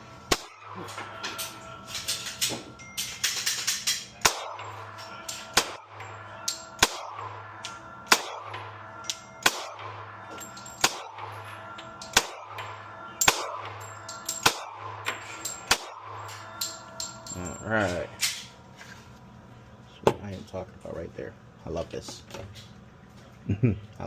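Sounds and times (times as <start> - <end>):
background music with steady beat: 0.0 - 18.2.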